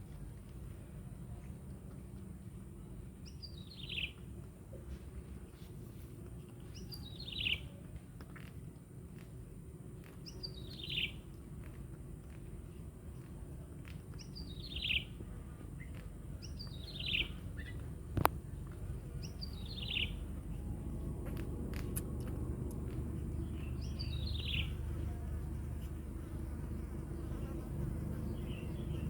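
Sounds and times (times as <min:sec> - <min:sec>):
low background rumble: 0:00.0 - 0:29.0
bird chirping: 0:03.2 - 0:04.2, 0:06.6 - 0:07.8, 0:10.2 - 0:11.2, 0:14.2 - 0:15.2, 0:15.8 - 0:17.9, 0:19.1 - 0:20.6, 0:23.4 - 0:25.2, 0:27.2 - 0:29.0.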